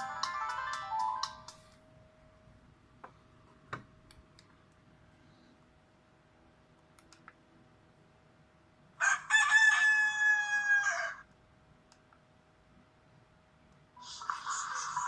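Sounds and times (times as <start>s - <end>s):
rooster crow ringtone: 9.0s - 11.2s.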